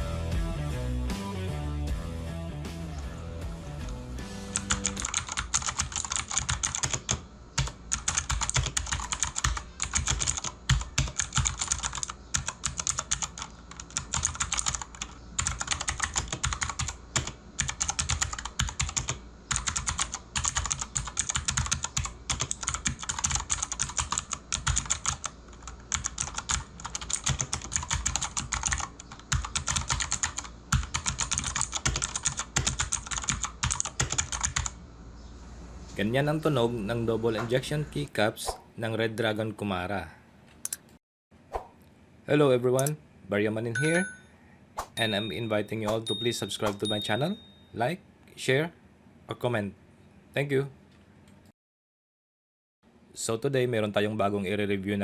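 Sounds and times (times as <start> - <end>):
clicky keyboard typing: 4.6 - 34.7.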